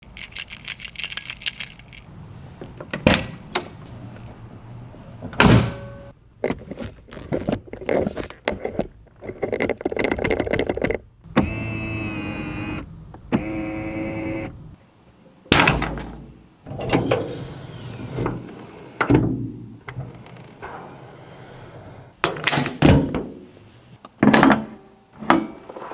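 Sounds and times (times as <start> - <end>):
keys jangling: 0.0 - 2.1
door and latch clicks: 15.5 - 17.2.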